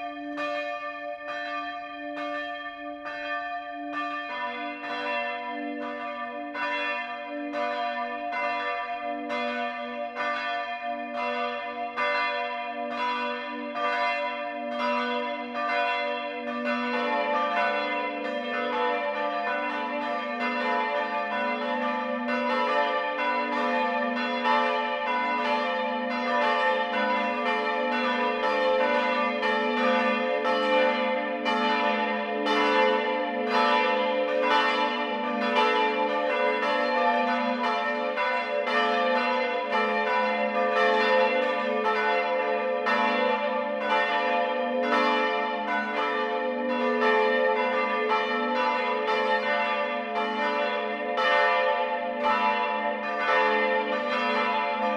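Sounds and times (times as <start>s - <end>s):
church bells pealing: 0.0s - 54.9s.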